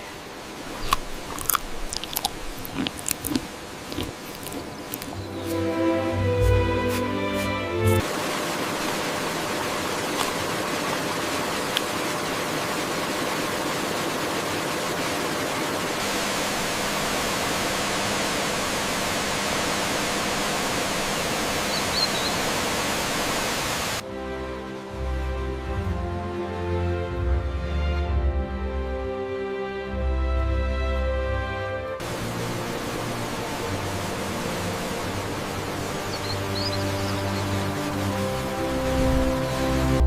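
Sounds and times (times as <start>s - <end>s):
waterfall rushing: 0.0s - 24.0s, 32.0s - 40.0s
gentle music: 0.8s - 8.1s, 24.0s - 40.0s.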